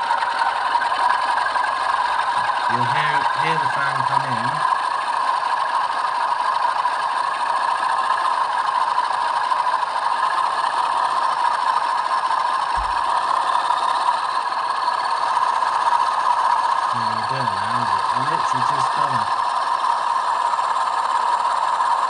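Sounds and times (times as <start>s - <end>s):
diesel engine drone from small speaker: 0.0s - 22.0s
low thump: 12.8s - 13.0s.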